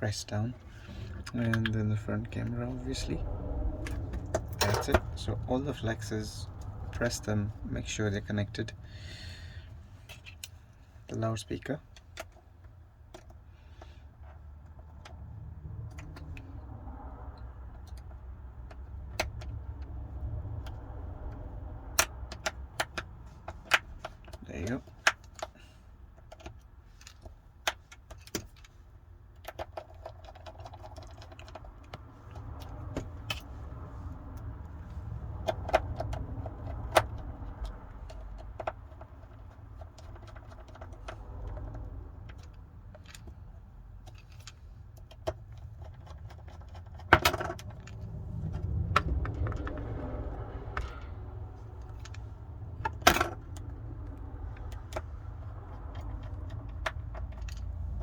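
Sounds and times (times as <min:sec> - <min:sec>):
steady low rumble: 0:00.0 - 0:11.9, 0:14.7 - 0:24.6, 0:31.5 - 0:58.0
small tools clicking and tapping: 0:22.0 - 0:33.6, 0:51.8 - 0:58.0.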